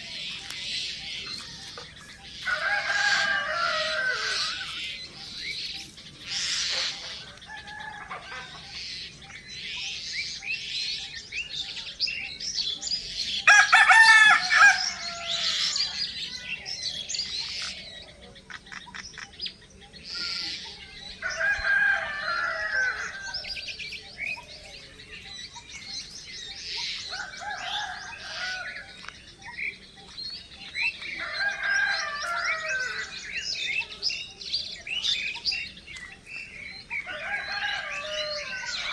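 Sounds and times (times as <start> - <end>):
chicken calls: 0.0 - 10.4, 13.0 - 19.0, 19.8 - 38.9
small birds chirping: 0.0 - 38.9
rooster crowing: 2.4 - 5.0, 13.4 - 16.1, 21.2 - 23.8, 27.0 - 29.1, 31.2 - 33.5, 36.9 - 38.9.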